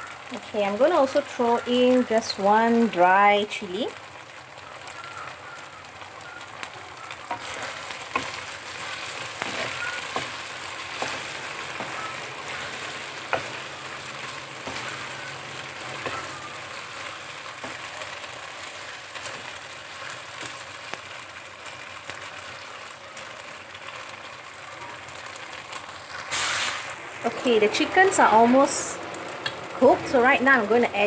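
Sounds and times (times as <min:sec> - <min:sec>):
meat sizzling in oil: 0:00.0 - 0:31.0
spatula scraping pan: 0:07.3 - 0:20.6.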